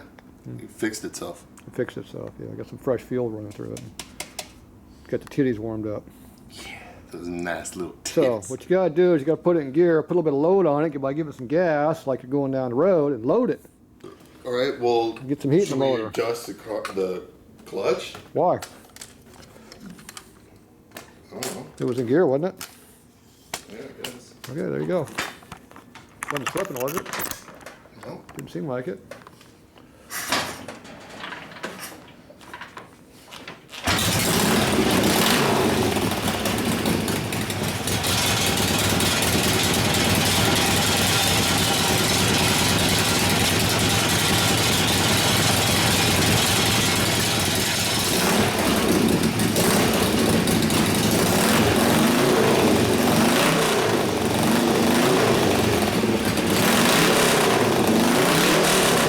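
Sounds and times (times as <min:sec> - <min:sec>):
motorcycle engine running: 0:33.9 - 0:59.0.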